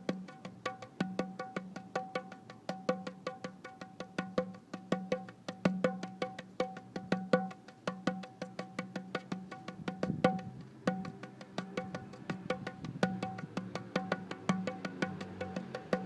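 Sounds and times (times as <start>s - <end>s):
music with wood-block clicks: 0.0s - 16.0s.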